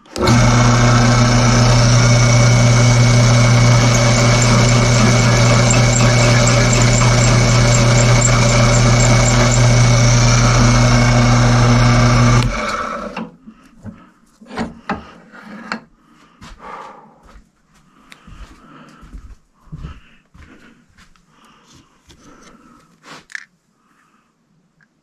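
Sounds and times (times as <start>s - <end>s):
motor humming: 0.0s - 13.3s.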